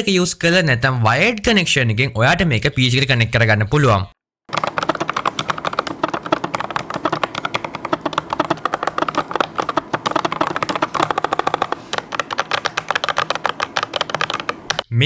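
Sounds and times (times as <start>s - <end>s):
fast keyboard typing clicks: 4.5s - 14.9s.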